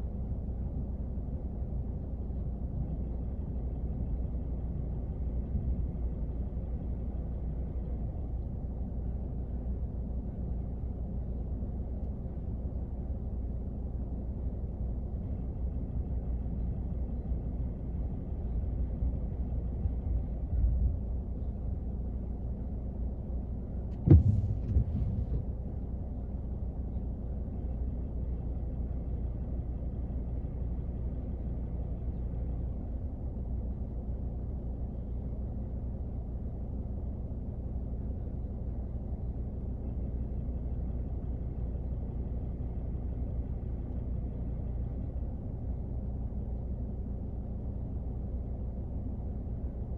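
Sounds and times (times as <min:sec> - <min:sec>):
muffled rain on a car: 0:23.9 - 0:25.6
thunder crack and rumble: 0:24.0 - 0:25.6.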